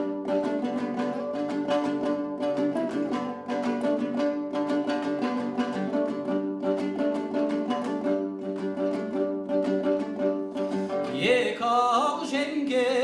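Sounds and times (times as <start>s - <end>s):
dombra strummed: 0.0s - 13.0s
person singing: 5.1s - 13.0s.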